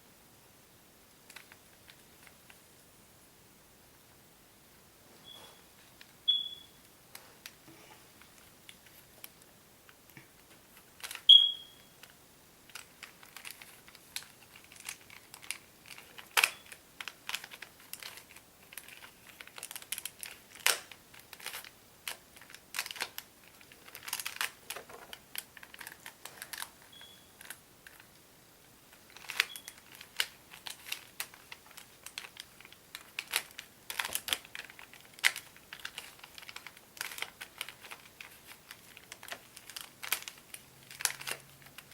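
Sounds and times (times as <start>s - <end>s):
puzzle cube plastic clicks: 10.9s - 11.3s, 12.0s - 26.8s, 28.9s - 41.9s.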